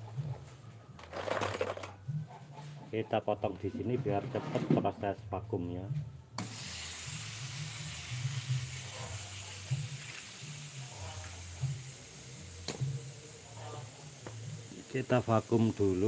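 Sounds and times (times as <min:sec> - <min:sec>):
gas hissing from pipe: 0:06.4 - 0:16.0.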